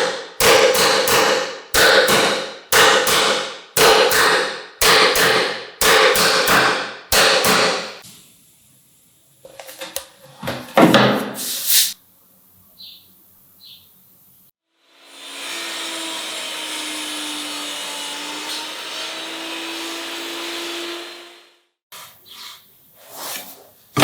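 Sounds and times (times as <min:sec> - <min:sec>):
hammer strikes ringing: 0:00.0 - 0:08.0.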